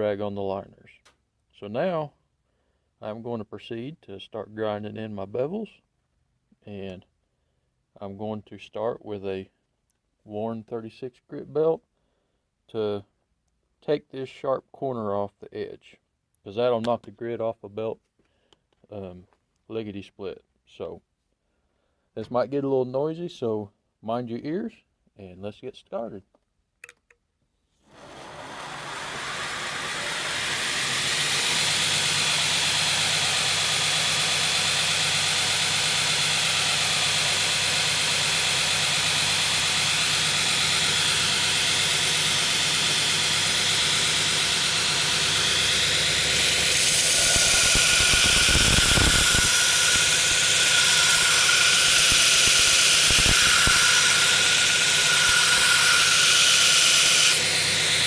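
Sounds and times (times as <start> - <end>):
belt grinder running: 27.9 - 58.0.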